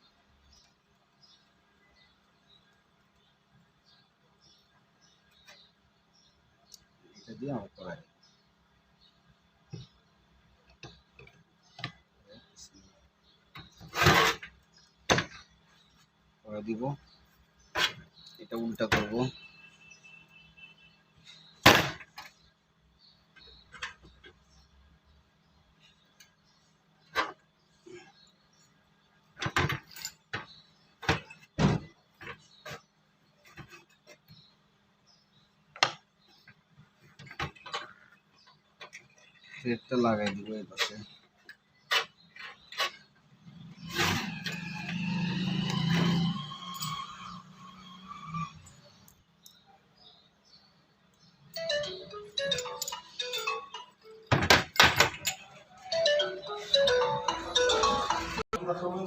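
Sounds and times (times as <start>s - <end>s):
metal parts clinking: 51.5s - 56.0s.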